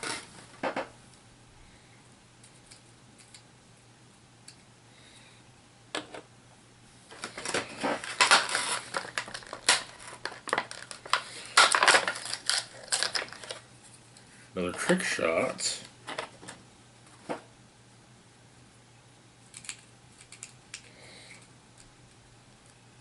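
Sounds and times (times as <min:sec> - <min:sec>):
plastic packaging rustling and crinkling: 0:07.1 - 0:13.7.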